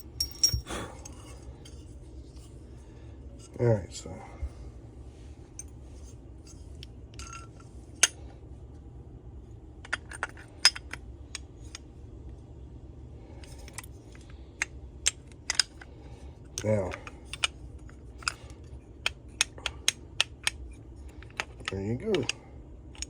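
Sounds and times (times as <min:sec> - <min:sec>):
metal tools clinking: 0:00.0 - 0:01.9.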